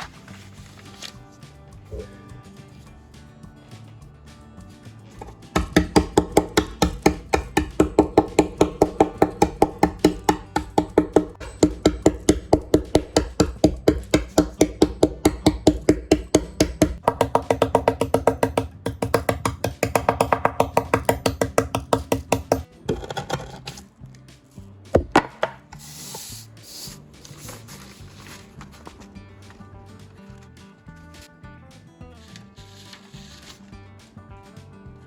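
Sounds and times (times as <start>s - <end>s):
plucked percussive music: 5.1s - 23.6s
sharp knocks: 5.2s - 23.3s
short hiss: 25.7s - 27.0s.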